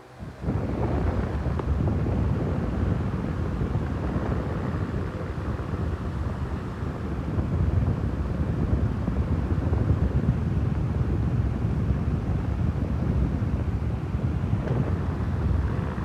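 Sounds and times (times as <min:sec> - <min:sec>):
fan wind noise on microphone: 0:00.0 - 0:16.0.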